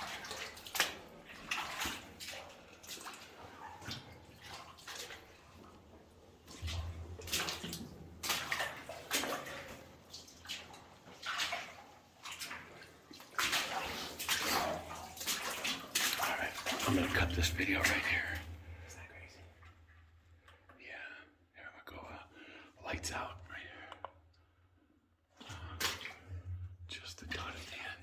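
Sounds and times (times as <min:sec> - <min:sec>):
boots sloshing through water: 0:00.0 - 0:19.7, 0:25.4 - 0:26.6.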